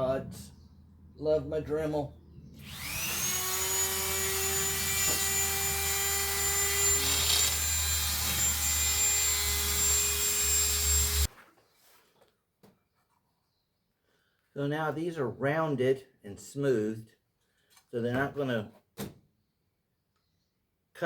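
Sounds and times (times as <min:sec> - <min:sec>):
rotary tool grinding plastic: 0:02.6 - 0:11.3.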